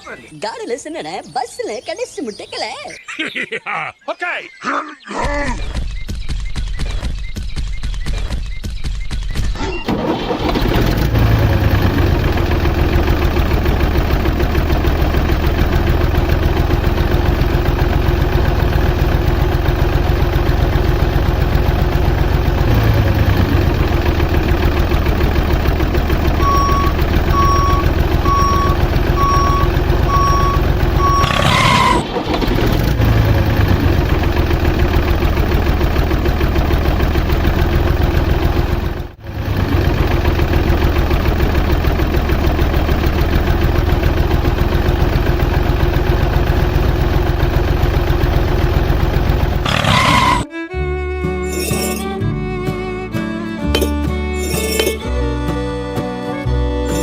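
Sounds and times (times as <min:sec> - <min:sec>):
vehicle engine running: 0:06.3 - 0:57.0
reversing beeps: 0:26.4 - 0:32.2.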